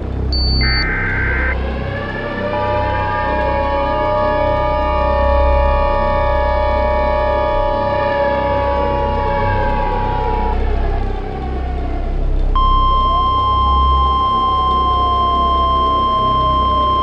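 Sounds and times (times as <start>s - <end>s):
warning siren winding down: 0.0s - 17.0s
weather radio alarm tone: 0.4s - 1.6s, 12.6s - 17.0s.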